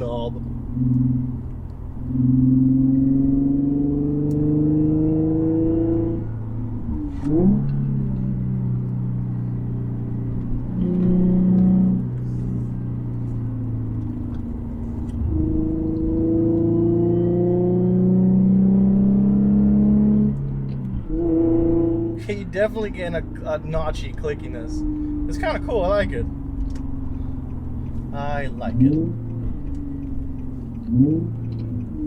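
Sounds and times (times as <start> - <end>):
car engine accelerating: 0.0 - 32.0.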